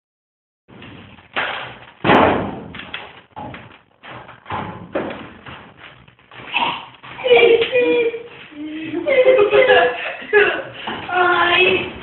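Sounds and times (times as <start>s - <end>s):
thumps against garage door: 1.4s - 5.6s.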